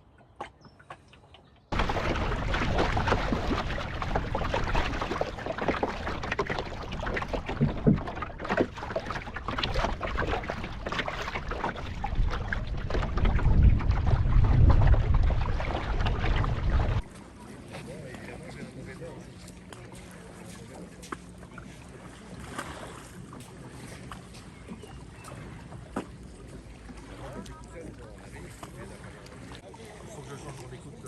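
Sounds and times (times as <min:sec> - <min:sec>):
water slapping against hull: 0:00.3 - 0:31.0
water splashes: 0:00.7 - 0:31.0
wind buffeting microphone: 0:01.7 - 0:17.1.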